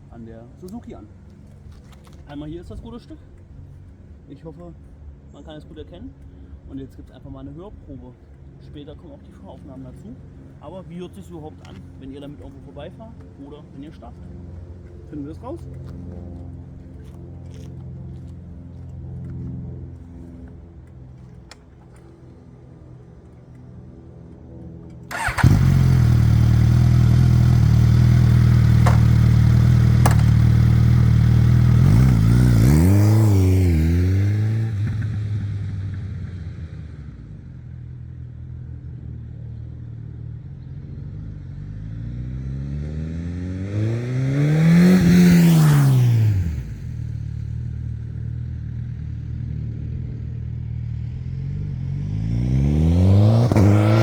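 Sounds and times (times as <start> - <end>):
motorcycle engine revving: 25.1 - 37.6, 40.6 - 54.0.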